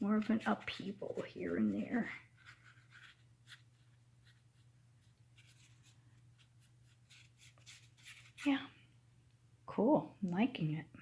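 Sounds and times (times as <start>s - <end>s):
paintbrush scratching on canvas: 0.0s - 8.7s
low steady hum: 0.0s - 11.0s.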